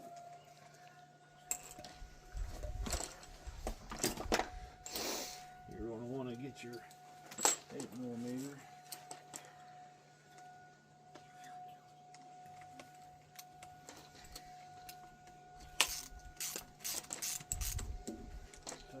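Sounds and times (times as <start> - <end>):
metallic clinks of small tools: 1.4 - 5.0, 15.6 - 19.0.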